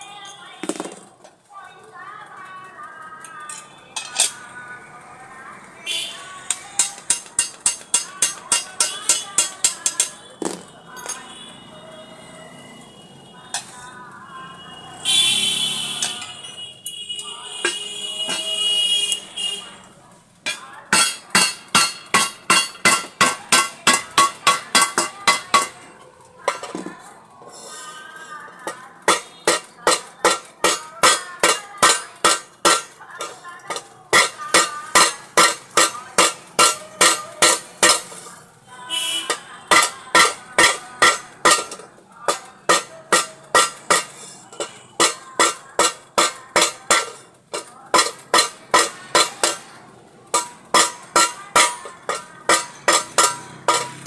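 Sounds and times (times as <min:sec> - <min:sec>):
hammer striking metal: 0:06.5 - 0:11.3, 0:20.5 - 0:25.9, 0:28.7 - 0:38.2, 0:39.2 - 0:54.0.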